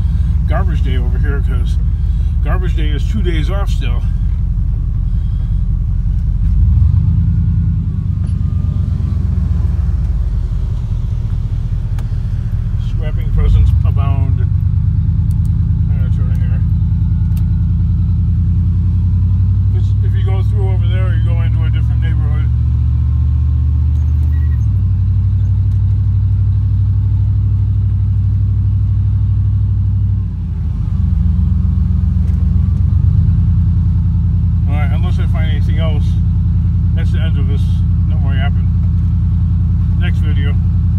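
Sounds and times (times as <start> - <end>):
vehicle engine and road noise: 0.0 - 40.9.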